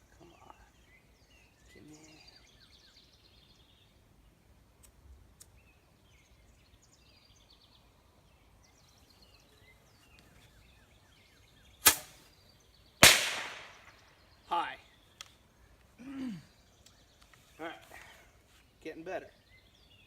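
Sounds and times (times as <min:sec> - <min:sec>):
faint bird chirps: 0:00.0 - 0:04.4
bottle rocket bang: 0:11.8 - 0:12.2, 0:13.0 - 0:13.9.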